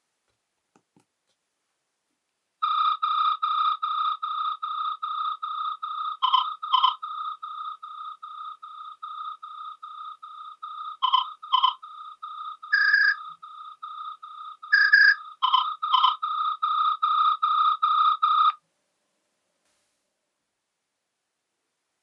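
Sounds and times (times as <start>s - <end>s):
polyphonic ringtone: 2.6s - 18.6s.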